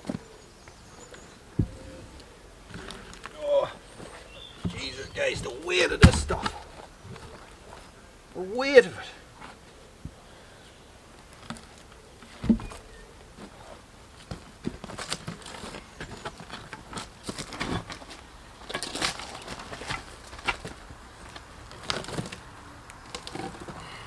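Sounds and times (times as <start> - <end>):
heavy wood thump: 1.6 - 2.2, 4.6 - 6.8
wood knocking and rustling: 1.6 - 3.4, 4.0 - 7.4.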